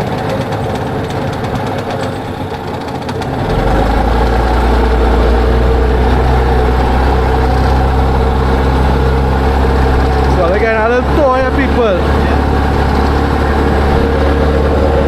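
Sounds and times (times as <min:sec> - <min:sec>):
outboard motor running: 0:00.0 - 0:15.0.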